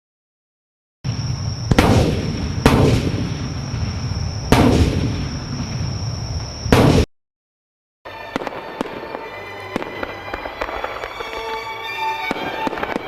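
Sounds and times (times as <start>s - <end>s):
firework booms: 1.0s - 7.1s, 12.2s - 13.0s.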